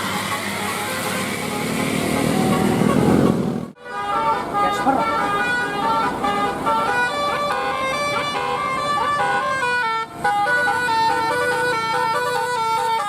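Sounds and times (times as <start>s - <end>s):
multi-tone bus air horn melody: 0.0s - 13.0s.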